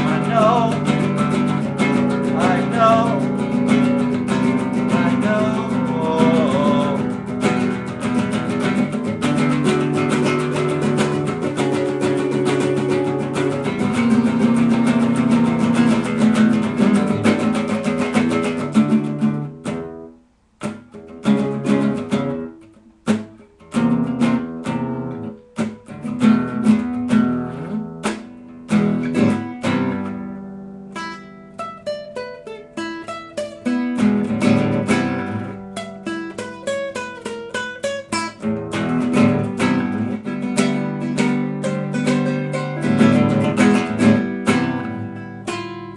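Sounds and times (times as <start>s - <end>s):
acoustic guitar: 0.0s - 45.9s.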